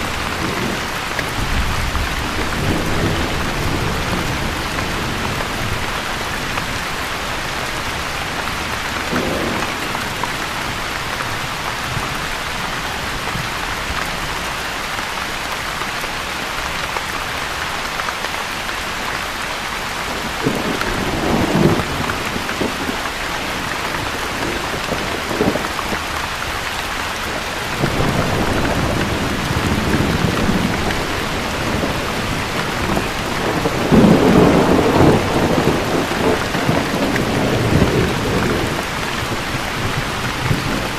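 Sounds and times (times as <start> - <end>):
thunder rumbling: 0.0 - 12.3, 20.1 - 26.6, 27.2 - 40.9
steady rain: 0.0 - 40.9.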